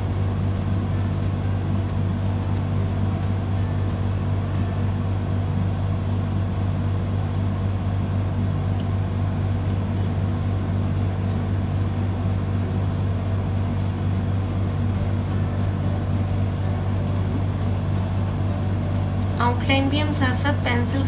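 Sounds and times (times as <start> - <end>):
pencil scratching on paper: 0.0 - 1.8, 9.6 - 18.0
low hum: 0.0 - 21.0.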